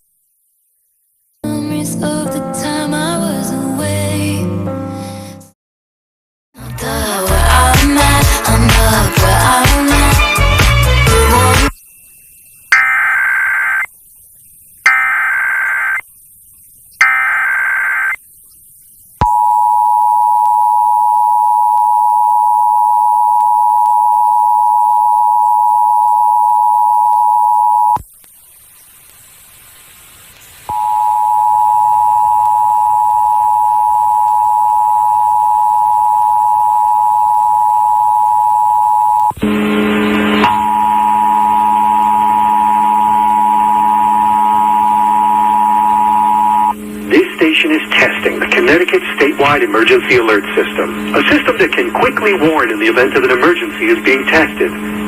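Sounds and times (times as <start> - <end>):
harsh data bursts: 12.7 - 13.9, 14.8 - 16.0, 17.0 - 18.2, 39.0 - 55.0
two-tone attention signal: 12.7 - 13.9, 14.9 - 16.0, 40.1 - 46.8
low buzz: 30.7 - 55.0.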